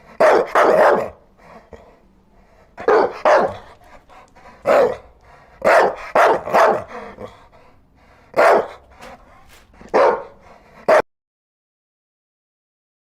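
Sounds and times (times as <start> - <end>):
dog barking: 0.0 - 1.2, 2.8 - 7.4, 8.3 - 11.0.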